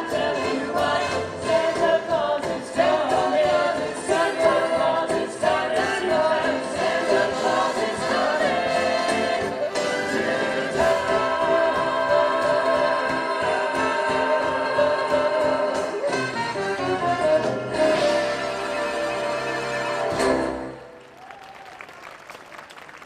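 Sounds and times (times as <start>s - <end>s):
choir singing: 0.0s - 16.4s.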